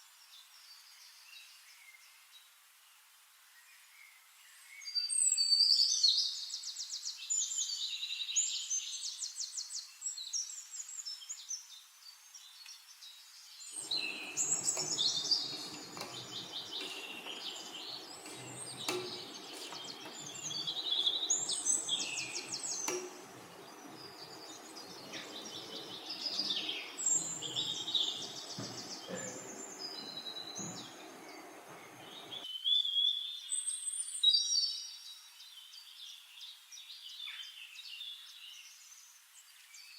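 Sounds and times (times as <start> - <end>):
birds trilling: 13.8 - 32.4
low even noise: 13.8 - 32.4.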